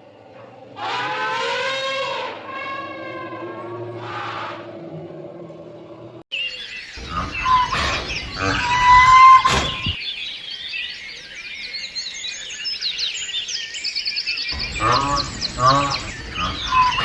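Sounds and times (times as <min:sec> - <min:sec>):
songbirds chirping: 0:00.0 - 0:17.0
low whistled tones: 0:07.0 - 0:10.0.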